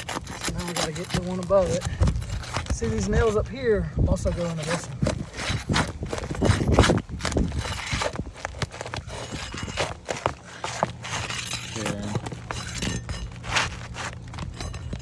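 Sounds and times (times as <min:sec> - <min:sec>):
nails being pried loose: 0:00.0 - 0:03.4
roof shingles crackling: 0:00.0 - 0:15.0.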